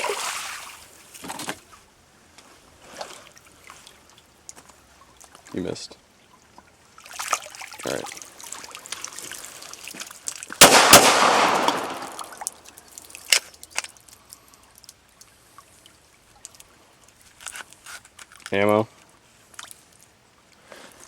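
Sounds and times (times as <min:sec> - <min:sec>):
pistol gunshots: 0:10.6 - 0:12.4.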